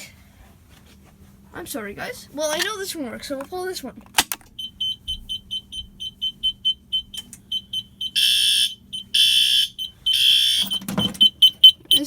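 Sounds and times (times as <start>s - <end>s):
rapid high alarm beeping: 4.5s - 12.0s
fire alarm horn blasts: 4.6s - 12.0s.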